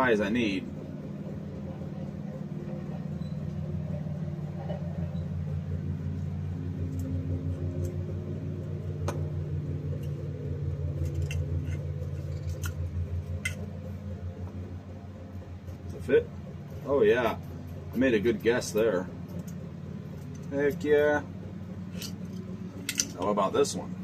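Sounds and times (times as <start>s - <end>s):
low pulsing hum: 0.0s - 24.0s
small metal wires clicking: 10.9s - 13.9s, 19.2s - 20.9s, 21.9s - 23.3s.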